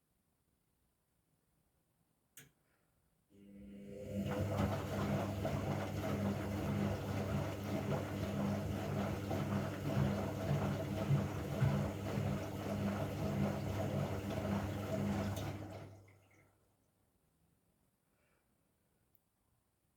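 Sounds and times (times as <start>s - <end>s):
washing machine running: 3.4s - 16.4s.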